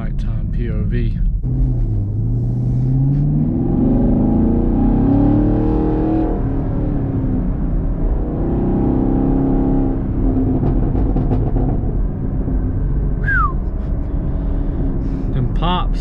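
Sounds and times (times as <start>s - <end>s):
exhaust crackling and popping: 0.0s - 3.4s, 9.8s - 16.0s
car engine revving: 0.0s - 16.0s.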